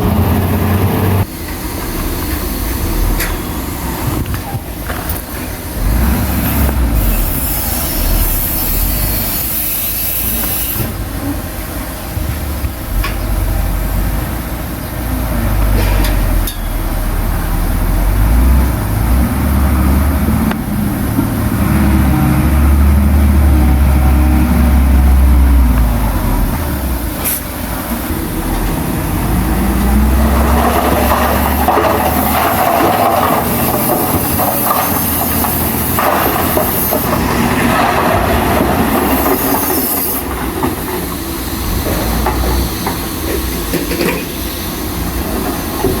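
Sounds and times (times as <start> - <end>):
diesel earthmoving machinery engine: 0.0 - 46.0
hiss: 5.3 - 11.3, 26.2 - 46.0.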